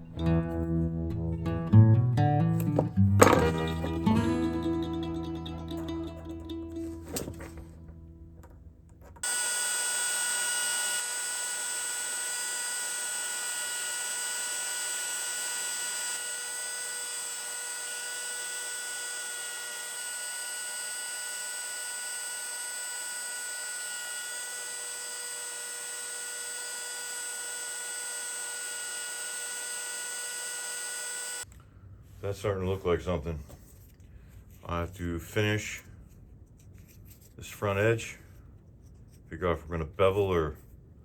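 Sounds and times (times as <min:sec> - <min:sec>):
power tool whining: 0:02.6 - 0:06.2, 0:06.8 - 0:31.5.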